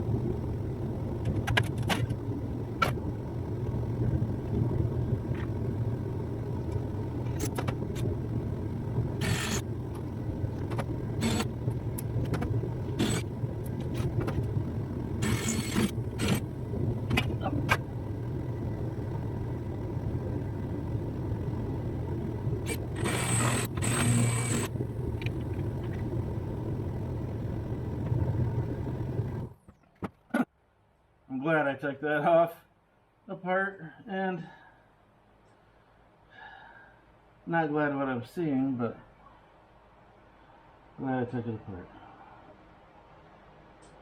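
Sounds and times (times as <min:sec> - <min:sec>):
low hum: 0:00.0 - 0:31.3
harsh bursts: 0:21.5 - 0:26.2.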